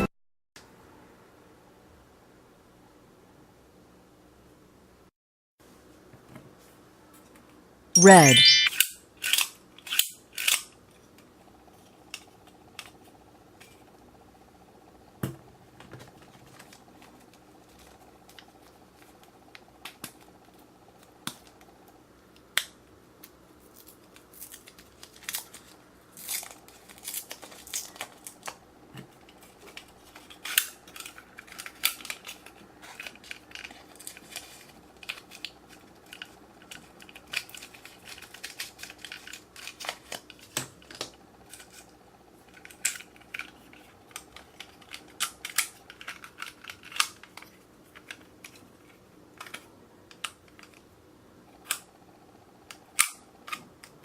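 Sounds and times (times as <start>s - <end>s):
plastic craft items clicking: 42.5s - 48.6s.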